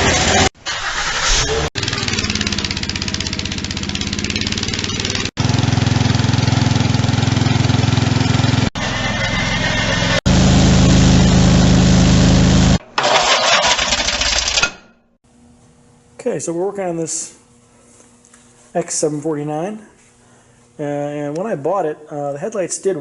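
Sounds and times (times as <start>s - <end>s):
engine running: 0.0s - 14.7s.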